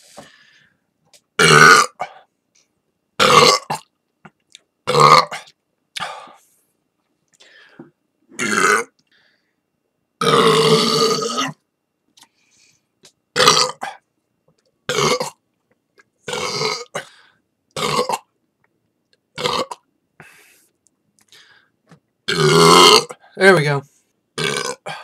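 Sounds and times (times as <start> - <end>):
loud burps: 1.4 - 2.2, 3.2 - 4.0, 4.8 - 5.6, 8.3 - 9.0, 10.2 - 11.6, 13.3 - 14.0, 14.9 - 15.4, 16.2 - 17.1, 17.8 - 18.3, 19.4 - 19.9, 22.3 - 23.2, 24.4 - 25.0.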